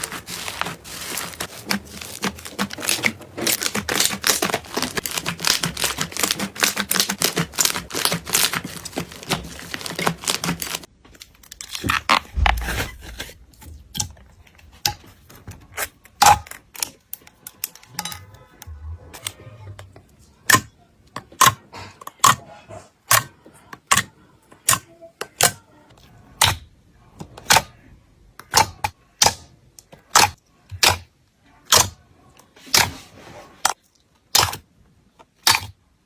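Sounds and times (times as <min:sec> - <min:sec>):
slime crackling and popping: 0:00.0 - 0:13.0.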